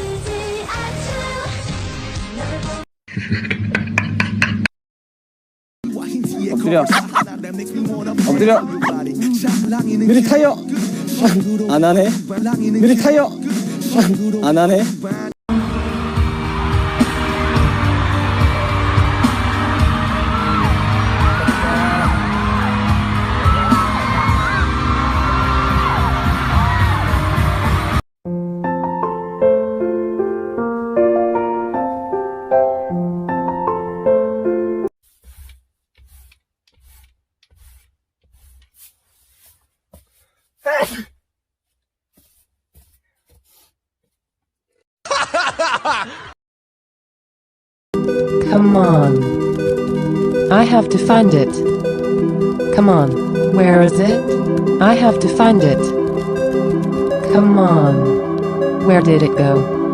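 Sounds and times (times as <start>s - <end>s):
pop music with singing: 5.8s - 28.0s
burst of laughter: 6.9s - 7.3s, 45.1s - 46.3s.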